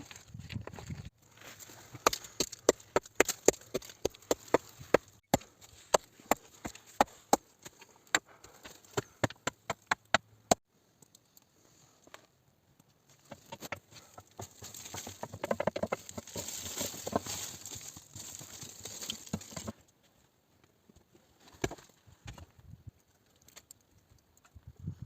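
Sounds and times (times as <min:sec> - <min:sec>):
dry wood cracking and snapping: 0:01.6 - 0:10.2, 0:13.2 - 0:19.8, 0:23.0 - 0:24.6.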